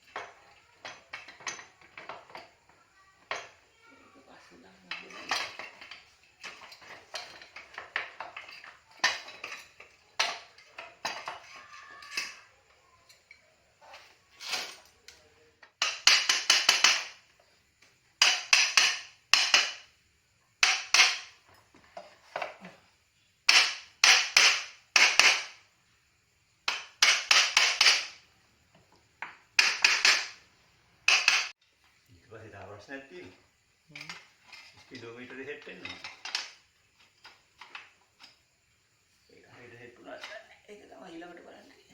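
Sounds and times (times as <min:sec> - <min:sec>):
metal tools clinking: 0:00.0 - 0:03.7, 0:04.7 - 0:17.2, 0:34.0 - 0:38.5.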